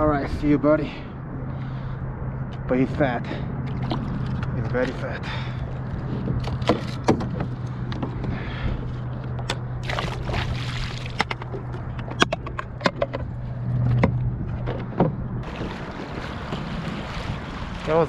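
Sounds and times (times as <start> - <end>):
water sloshing: 3.5 - 7.1, 9.8 - 18.0.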